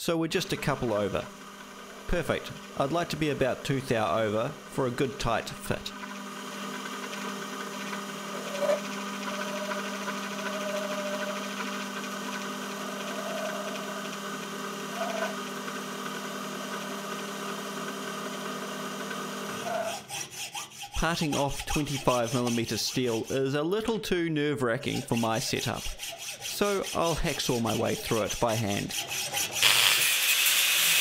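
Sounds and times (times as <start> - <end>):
lathe motor humming: 0.4 - 23.9, 24.8 - 31.0.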